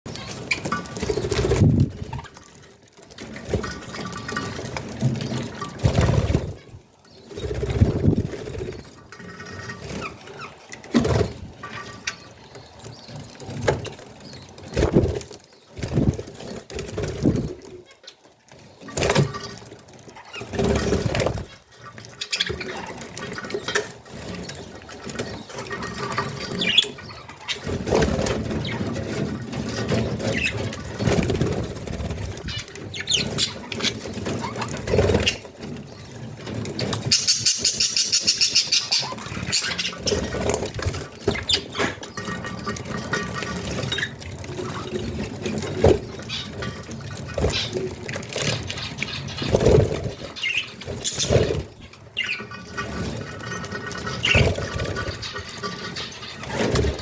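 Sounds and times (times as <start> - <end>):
budgerigars chattering and chirping: 20.2 - 29.0, 29.7 - 36.1, 36.8 - 43.9, 45.7 - 57.0.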